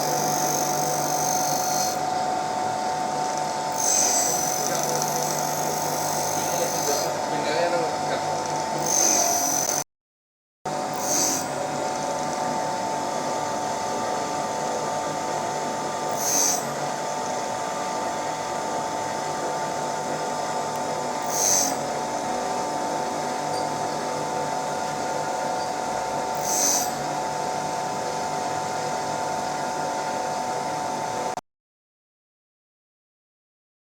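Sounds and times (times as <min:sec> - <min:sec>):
high-pitched motor whine: 0:00.0 - 0:09.9, 0:10.7 - 0:31.4
short hissing grind: 0:21.3 - 0:21.8.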